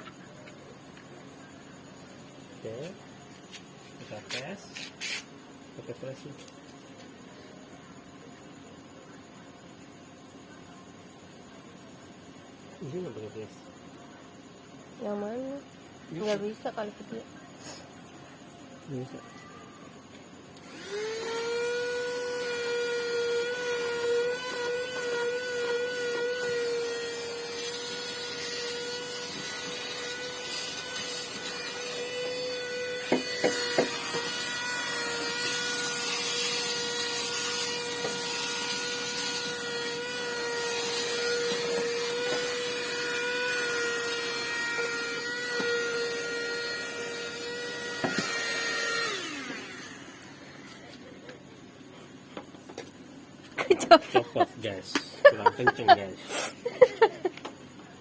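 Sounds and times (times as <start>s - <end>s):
car vacuum cleaner whining: 20.6s - 51.4s.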